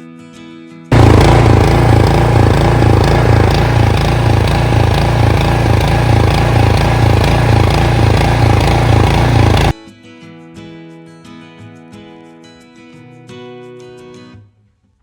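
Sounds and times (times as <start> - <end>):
snowblower engine running: 0.9 - 9.7.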